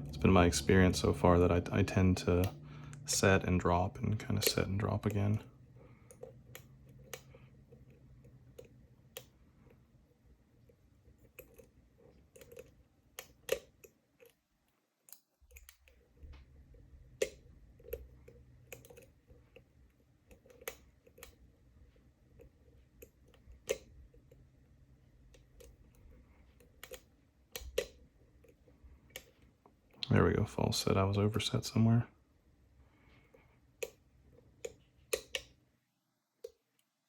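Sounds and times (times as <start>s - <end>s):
lock pick clicking in a lock: 26.8s - 28.0s.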